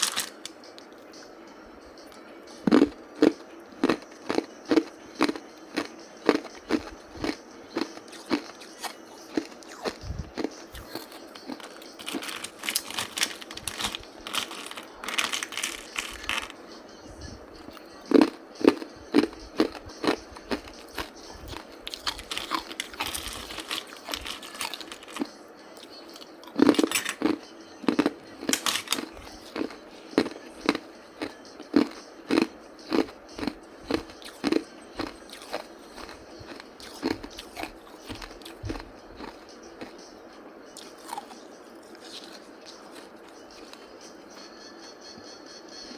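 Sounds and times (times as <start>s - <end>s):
ice crunching in the mouth: 0.0s - 0.4s, 2.7s - 16.5s, 18.1s - 25.3s.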